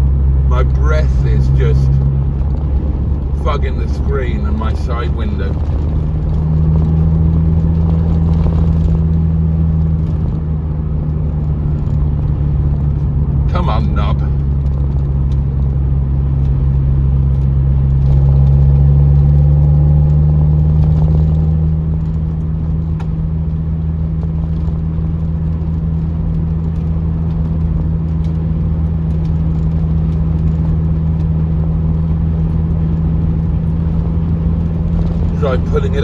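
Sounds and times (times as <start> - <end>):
car engine and road noise: 0.0 - 36.0.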